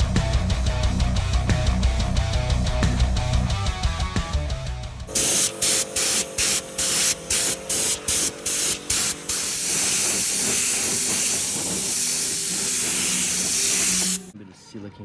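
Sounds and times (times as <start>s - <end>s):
spray hissing: 5.1s - 14.4s.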